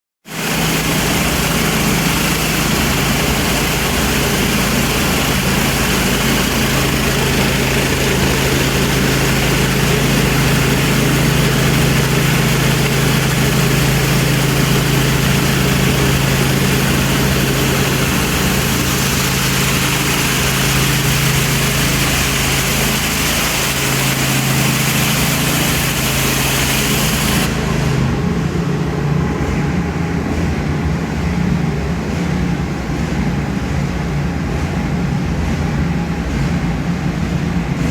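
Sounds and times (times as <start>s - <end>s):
high-pressure spray hissing: 0.3s - 28.1s
pressure washer engine humming: 0.3s - 37.9s.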